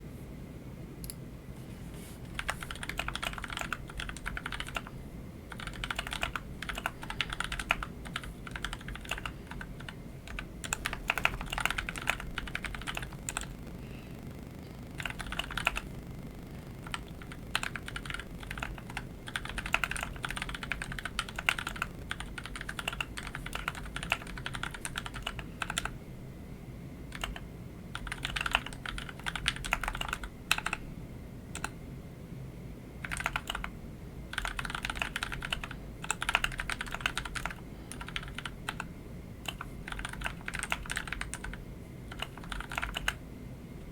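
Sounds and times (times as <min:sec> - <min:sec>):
mechanical keyboard typing: 0:02.3 - 0:13.7, 0:14.9 - 0:25.9, 0:27.1 - 0:27.4, 0:28.0 - 0:30.8, 0:33.0 - 0:33.7, 0:34.3 - 0:43.2.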